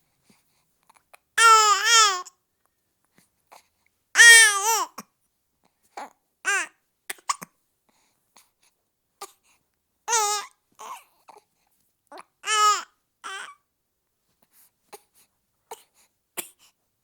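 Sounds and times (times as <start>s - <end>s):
high-pitched baby cries: 1.4s - 2.3s, 4.2s - 5.0s, 6.5s - 6.7s, 10.1s - 11.0s, 12.4s - 13.6s
baby hiccups: 6.5s - 7.5s.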